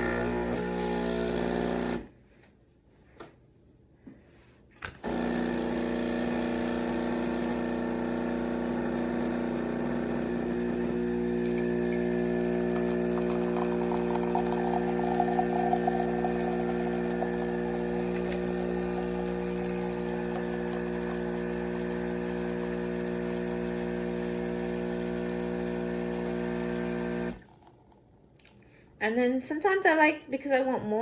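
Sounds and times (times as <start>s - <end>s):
coffee running hiss: 0.0s - 2.1s, 5.0s - 27.8s
espresso machine pump buzzing: 0.0s - 2.1s, 5.0s - 27.6s.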